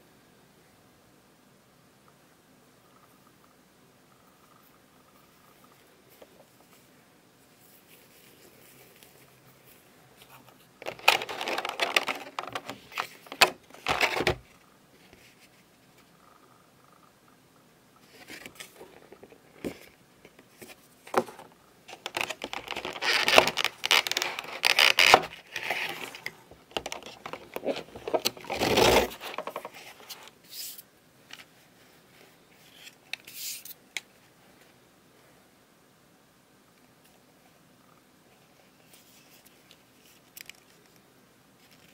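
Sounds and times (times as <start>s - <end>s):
packaging scraping and rustling: 10.2s - 14.5s, 20.6s - 30.8s.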